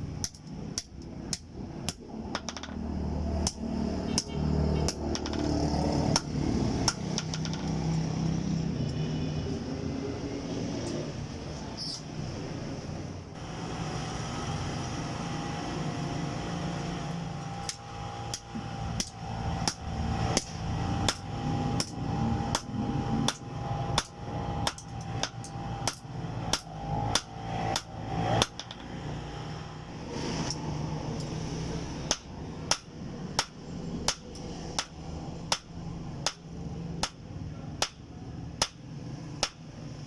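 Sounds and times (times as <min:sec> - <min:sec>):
steady hum: 0:13.1 - 0:40.0
hammer striking steel: 0:17.6 - 0:28.9, 0:32.1 - 0:38.8, 0:39.4 - 0:39.6.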